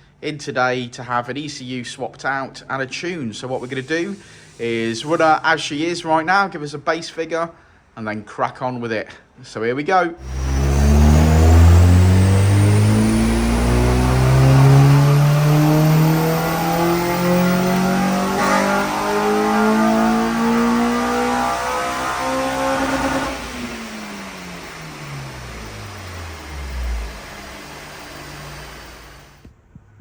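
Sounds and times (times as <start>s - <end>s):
car engine revving at full throttle: 10.2s - 29.4s.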